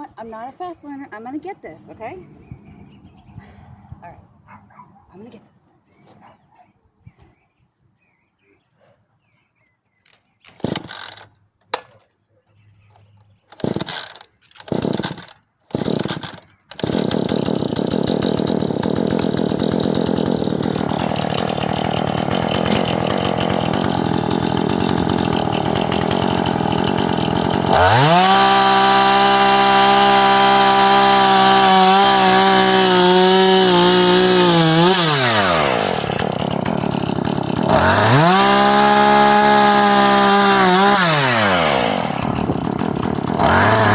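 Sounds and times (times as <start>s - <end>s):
chainsaw pull-start sputters: 10.5s - 12.0s, 13.5s - 43.9s
chainsaw engine idling and revving: 10.6s - 11.3s, 13.5s - 43.9s.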